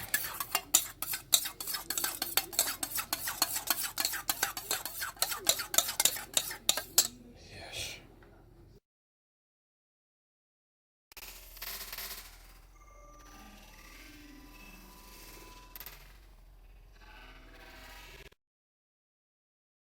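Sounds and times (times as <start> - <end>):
metal utensil scraping a pan: 0.0 - 7.2.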